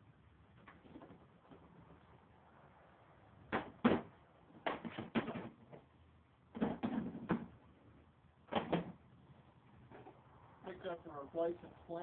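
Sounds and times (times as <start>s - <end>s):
hard objects knocking and clunking: 3.5s - 5.9s, 6.5s - 7.6s.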